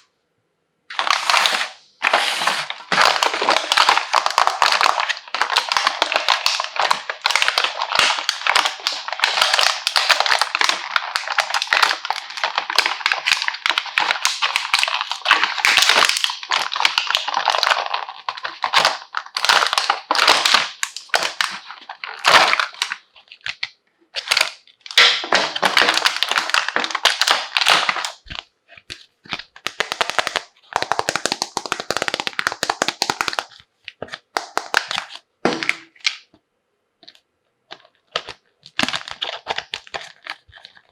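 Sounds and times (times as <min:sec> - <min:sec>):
plastic packaging crinkling: 0:00.9 - 0:36.3, 0:37.0 - 0:40.9.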